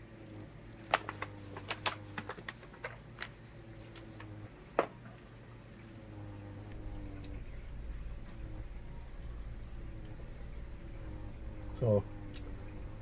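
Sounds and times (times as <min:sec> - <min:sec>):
faint steady hum: 0:00.0 - 0:13.0
handling food packets clicks: 0:00.8 - 0:05.0.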